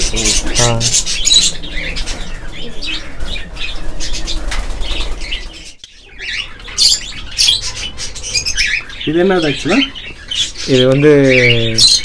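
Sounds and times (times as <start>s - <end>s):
birds chirping and squawking: 0.0s - 12.0s
birds flapping wings: 1.8s - 5.6s.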